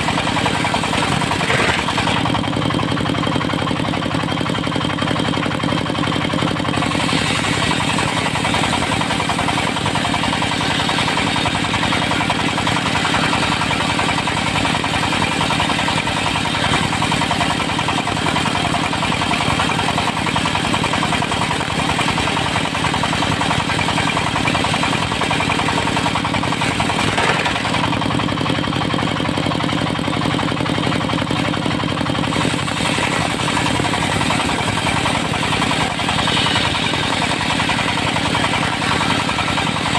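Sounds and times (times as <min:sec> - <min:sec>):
sawmill running with knocking beat: 0:00.0 - 0:39.9.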